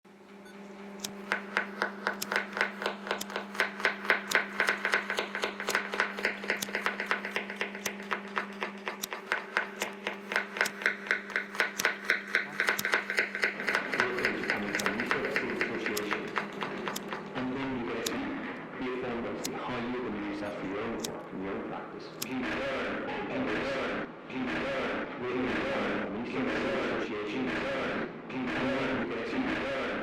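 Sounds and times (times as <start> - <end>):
steady low hum: 0.1 - 30.0
rapid sharp tapping: 1.0 - 18.2.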